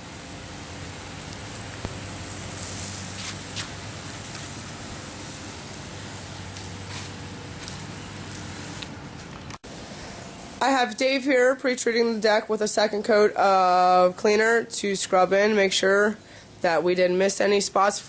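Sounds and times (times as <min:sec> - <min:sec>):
sprayer hissing: 0:00.0 - 0:08.9.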